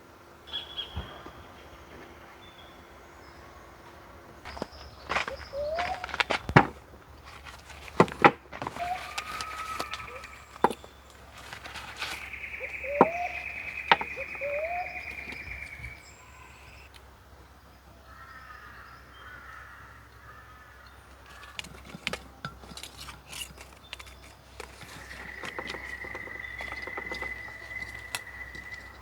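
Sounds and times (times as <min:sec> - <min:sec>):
birds calling: 0:00.0 - 0:29.0
sharp knocks and clicks: 0:12.7 - 0:15.4.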